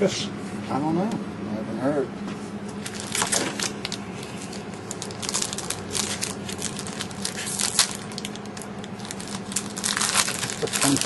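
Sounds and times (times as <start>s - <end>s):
foil wrappers crinkling and tearing: 2.8s - 11.0s.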